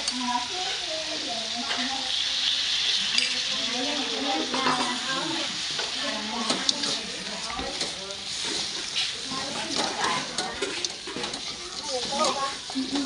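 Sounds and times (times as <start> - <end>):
wings sizzling in hot oil: 0.0 - 13.0
utensil clicking against pan: 5.8 - 13.0.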